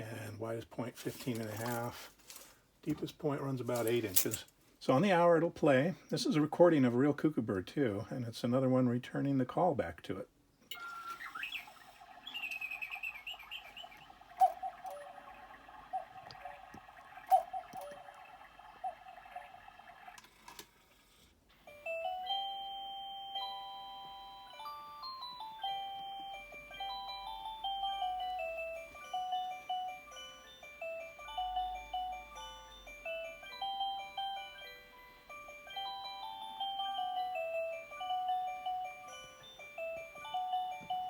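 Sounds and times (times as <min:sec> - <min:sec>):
recorded birdsong chirping: 0:10.6 - 0:20.2
electronic music-box melody: 0:10.7 - 0:20.4, 0:21.5 - 0:41.0.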